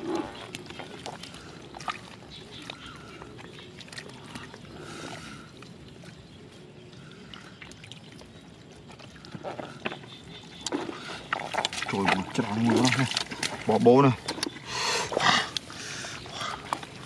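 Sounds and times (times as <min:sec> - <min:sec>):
hands splashing in muddy water: 0:00.0 - 0:05.3, 0:08.9 - 0:17.0.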